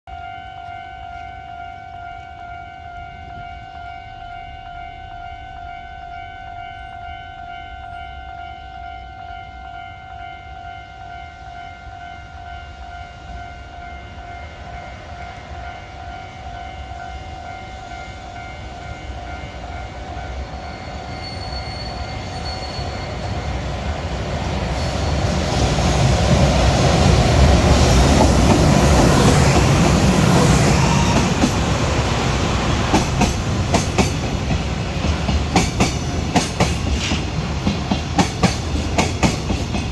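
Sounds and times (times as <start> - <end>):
level crossing warning bell: 0.1 - 23.6
train passing: 0.1 - 39.9
wheels clacking over rail joints: 23.0 - 39.9.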